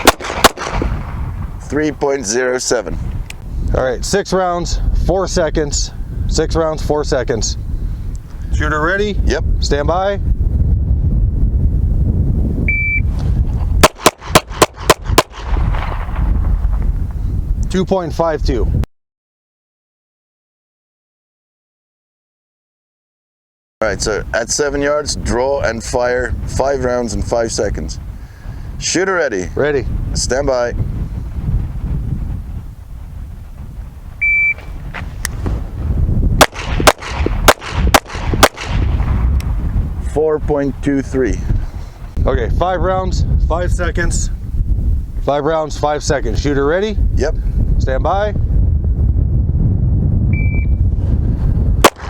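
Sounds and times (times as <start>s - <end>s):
pistol shots: 0.0s - 1.2s, 13.8s - 16.2s, 36.4s - 39.2s
wind rumble on microphone: 0.0s - 18.9s, 23.8s - 52.0s
shot timer beep: 12.7s - 13.1s, 34.2s - 34.7s, 50.4s - 50.8s.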